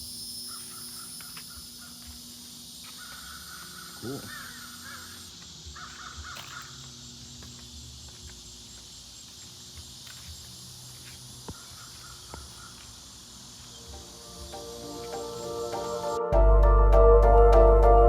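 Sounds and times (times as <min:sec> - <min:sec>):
high insect drone: 0:00.0 - 0:16.4
crow cawing: 0:02.9 - 0:06.9, 0:11.5 - 0:12.9.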